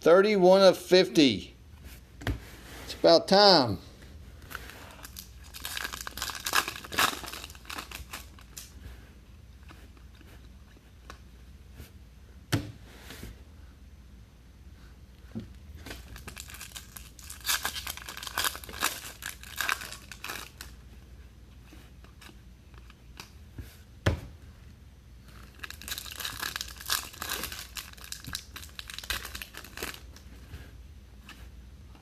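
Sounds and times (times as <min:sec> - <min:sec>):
foil wrappers tearing and crinkling: 0:05.0 - 0:08.7, 0:16.0 - 0:20.8, 0:25.4 - 0:30.2.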